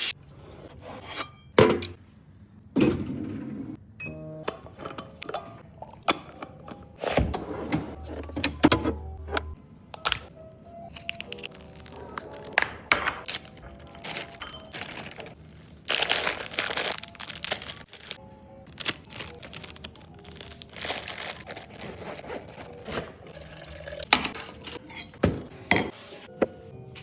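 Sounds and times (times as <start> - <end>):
soft background music: 4.0 - 27.0
objects clinking and rustling: 10.9 - 25.9.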